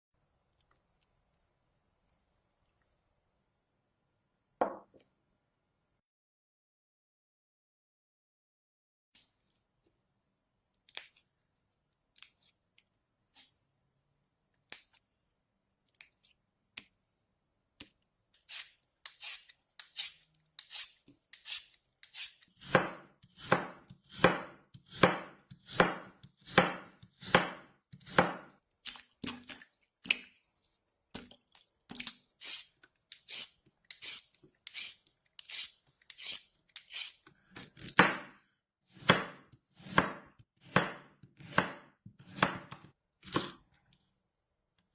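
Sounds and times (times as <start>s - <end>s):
knife cutting vegetables on board: 18.4s - 28.5s, 32.4s - 43.8s.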